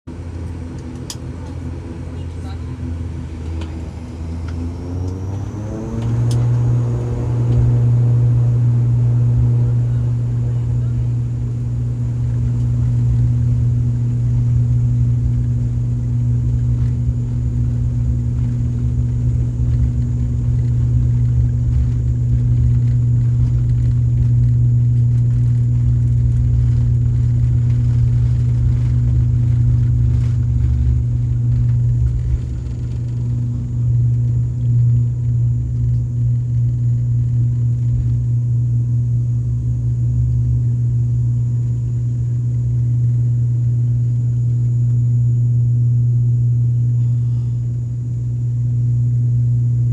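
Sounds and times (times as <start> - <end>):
low rumble: 0.0 - 49.9
turboprop propeller drone: 0.0 - 49.9
higher engine tone: 0.1 - 49.9.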